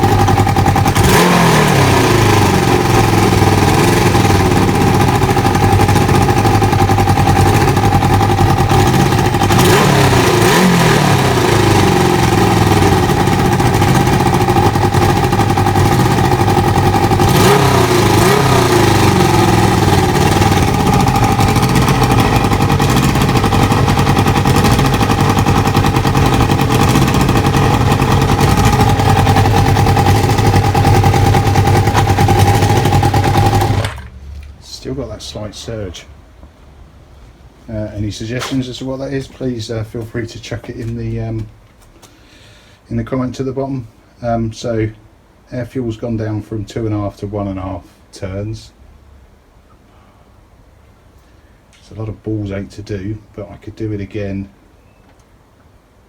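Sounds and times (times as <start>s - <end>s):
motorcycle engine idling: 0.0s - 34.1s.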